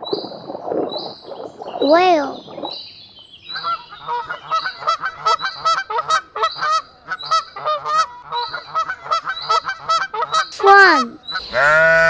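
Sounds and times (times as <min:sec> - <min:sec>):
swan honking: 0:03.6 - 0:12.0.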